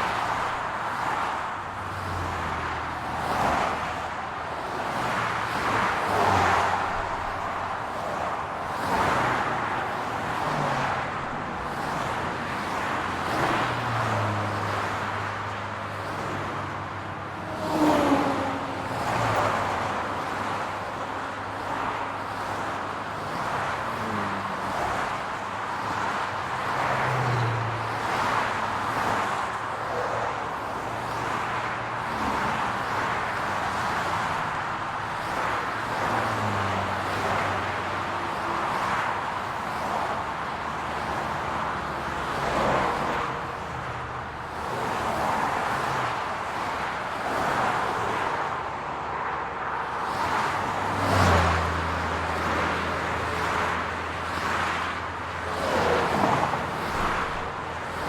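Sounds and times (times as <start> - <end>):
cars passing: 0.0 - 58.0
loud vehicle passing: 17.3 - 20.4, 26.0 - 30.3, 50.0 - 58.0.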